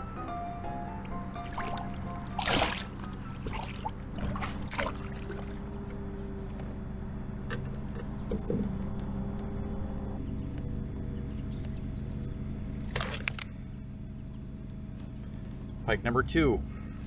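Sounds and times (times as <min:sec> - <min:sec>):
soft background music: 0:00.0 - 0:12.1
water sounds from kayak: 0:00.7 - 0:08.7, 0:12.8 - 0:13.4
splashy rush of water: 0:01.4 - 0:05.6.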